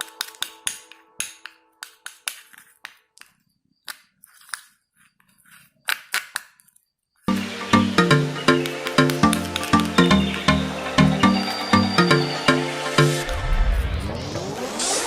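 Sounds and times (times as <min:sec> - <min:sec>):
soft background music: 0:00.0 - 0:03.1, 0:07.3 - 0:13.8.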